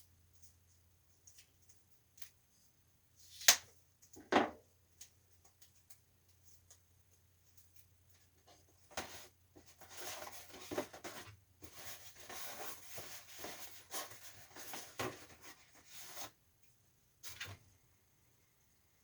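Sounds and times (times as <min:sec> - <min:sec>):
scratchy rubbing and crackling: 0:08.5 - 0:16.4.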